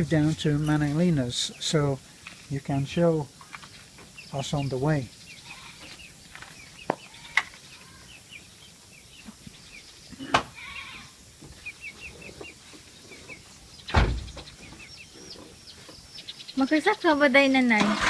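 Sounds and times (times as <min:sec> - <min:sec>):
birds chirping: 0:00.0 - 0:18.0
loud thump: 0:13.9 - 0:14.4.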